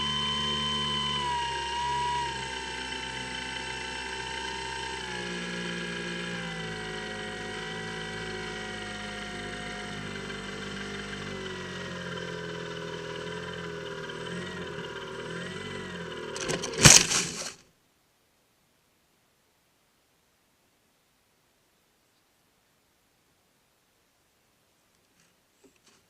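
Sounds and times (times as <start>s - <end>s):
electric motor and propeller whine: 0.0s - 17.6s.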